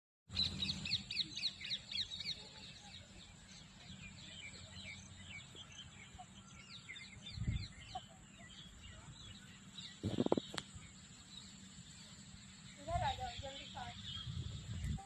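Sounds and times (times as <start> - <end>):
birds chirping: 0.3 - 15.0
steady high whine: 8.7 - 15.0.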